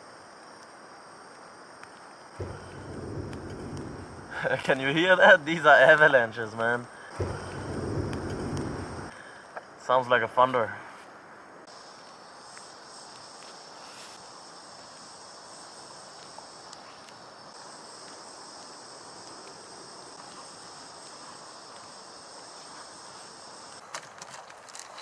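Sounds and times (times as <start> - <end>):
high steady whine: 2.4 - 5.4
gas stove hissing: 7.1 - 9.1.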